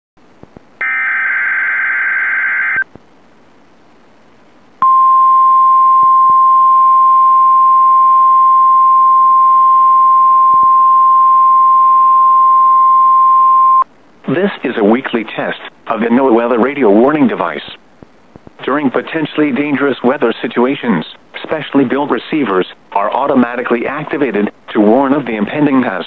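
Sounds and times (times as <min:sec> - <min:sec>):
steady warning alarm tone: 0:00.8 - 0:02.8.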